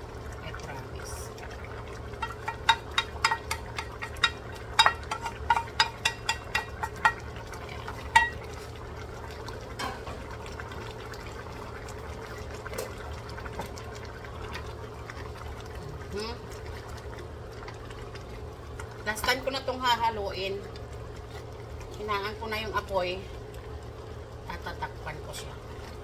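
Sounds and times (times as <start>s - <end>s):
metal spoon clinking against pot: 2.2s - 7.3s, 8.1s - 8.4s.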